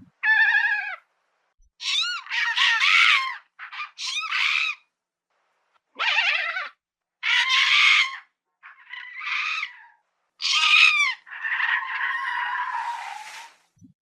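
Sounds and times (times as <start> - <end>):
lemur wailing cries: 1.8 - 4.8, 6.0 - 13.2.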